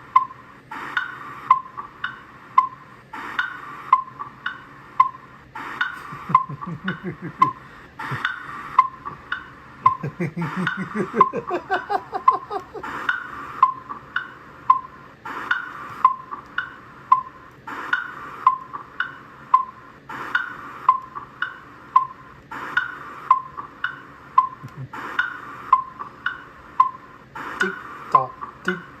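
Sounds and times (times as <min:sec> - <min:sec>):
wood-block tick-tock: 0:00.0 - 0:29.0.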